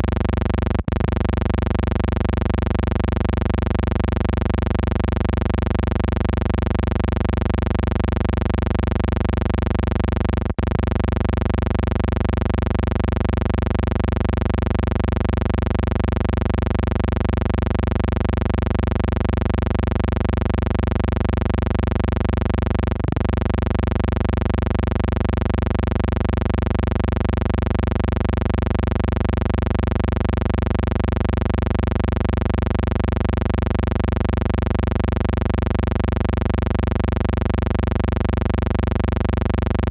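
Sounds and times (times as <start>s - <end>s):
low layered hum: 0.0s - 3.6s.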